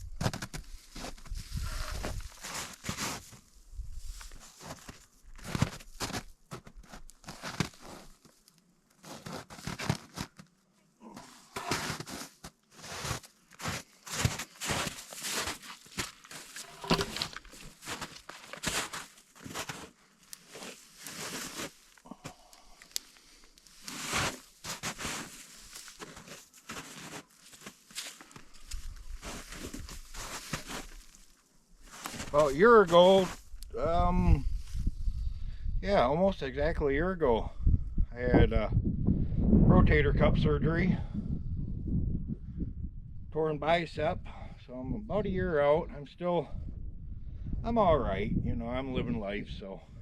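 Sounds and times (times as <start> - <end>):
crunching and rustling brush: 0.0 - 33.7.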